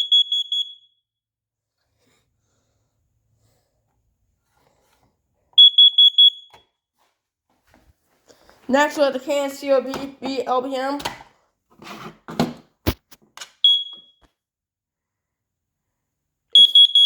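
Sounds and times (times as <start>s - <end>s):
smoke alarm beeping: 0.0s - 1.0s, 5.6s - 6.6s, 13.6s - 14.3s, 16.5s - 17.0s.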